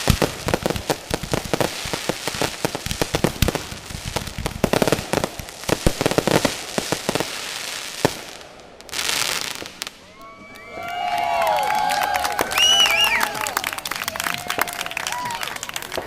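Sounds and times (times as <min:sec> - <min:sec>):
fireworks hissing rush: 0:00.0 - 0:10.1
fireworks crackling and banging: 0:00.0 - 0:16.0.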